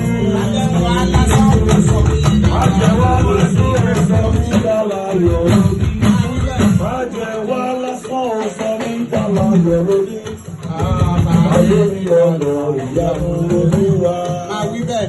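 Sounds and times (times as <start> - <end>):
drums: 0.0 - 15.0
rattles or tambourine shaken: 0.0 - 15.0
voices singing church music: 0.0 - 15.0.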